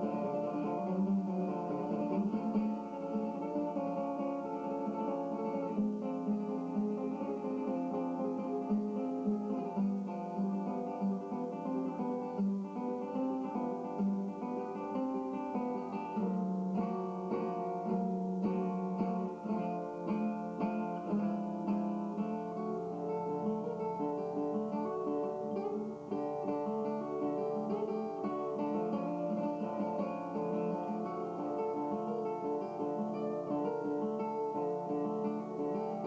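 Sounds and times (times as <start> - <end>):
acoustic guitar plucking: 0.0 - 36.0.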